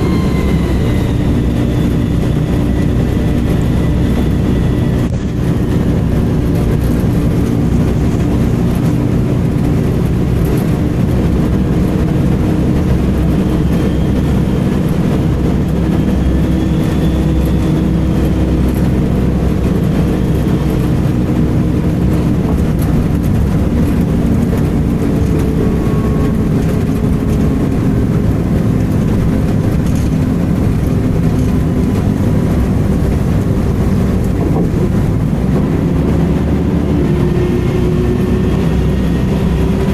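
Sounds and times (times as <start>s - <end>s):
faint high-pitched screeching: 0.0s - 5.1s
bus diesel engine: 0.0s - 39.9s
road noise: 0.0s - 39.9s.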